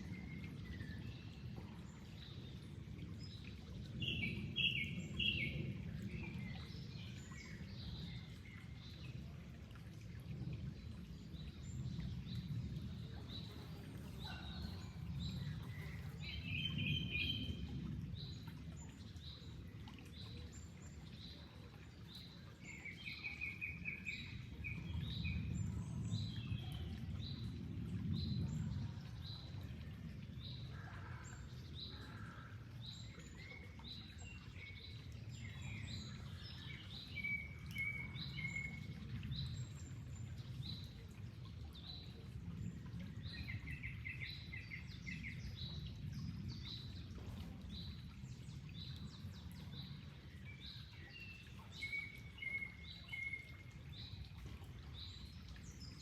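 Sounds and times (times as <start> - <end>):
flowing water: 0.0 - 56.0.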